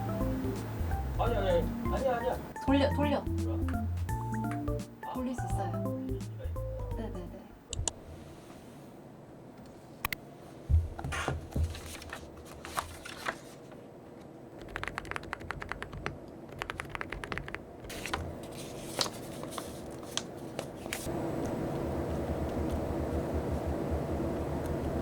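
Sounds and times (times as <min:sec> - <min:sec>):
mechanical keyboard typing: 0:14.6 - 0:17.6.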